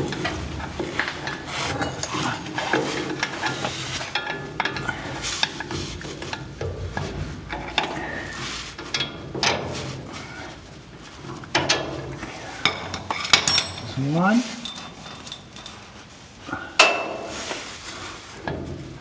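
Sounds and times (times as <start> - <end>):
metallic clinks and knocks: 13.2 - 16.1
metal parts ringing: 13.3 - 15.9.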